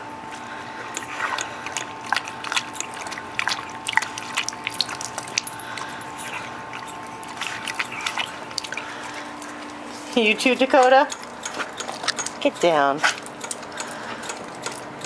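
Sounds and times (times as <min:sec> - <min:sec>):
dog licking water valve: 0:00.9 - 0:14.8
water trickling and dripping: 0:01.8 - 0:09.8.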